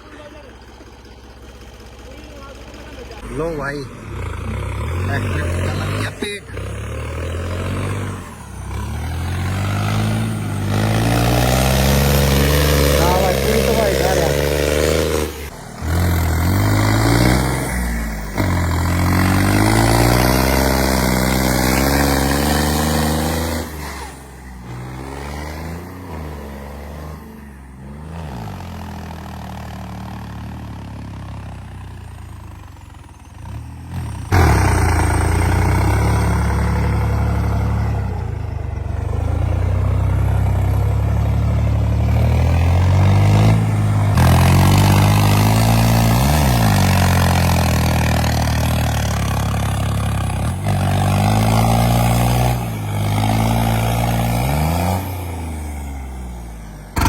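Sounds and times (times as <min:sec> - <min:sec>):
tractor diesel engine revving: 0:00.0 - 0:57.0.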